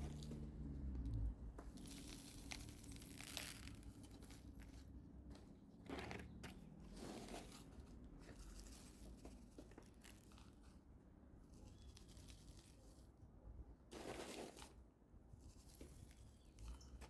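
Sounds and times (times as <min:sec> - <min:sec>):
hands rustling in potting soil: 0:01.6 - 0:13.2, 0:13.9 - 0:17.0
scrapes: 0:01.7 - 0:10.6, 0:13.9 - 0:14.8.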